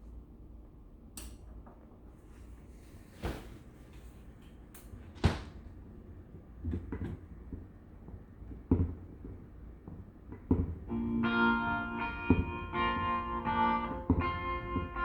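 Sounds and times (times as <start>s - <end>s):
turntable knocking: 6.6s - 15.0s.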